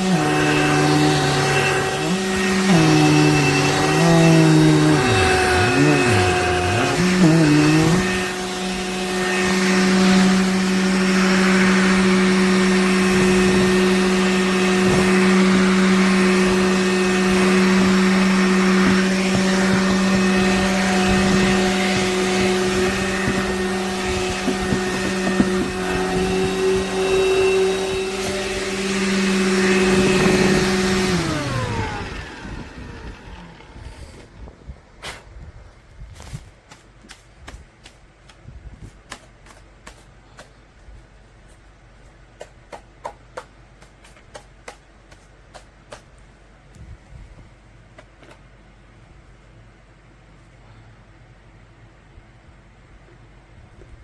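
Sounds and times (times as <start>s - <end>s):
handheld vacuum motor humming: 0.0s - 34.4s.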